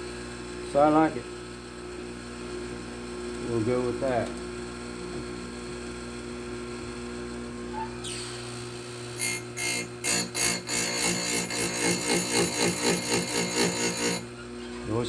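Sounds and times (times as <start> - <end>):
grinder motor humming: 9.0 - 15.0
grinding stone rasping on chain: 9.2 - 14.3.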